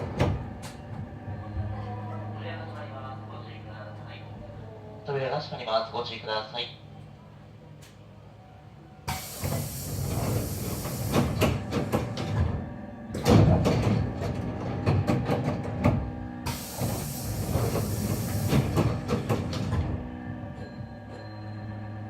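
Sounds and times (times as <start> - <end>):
train doors hissing and clattering: 0.0 - 1.3, 9.0 - 21.2
train door chime: 20.0 - 22.0.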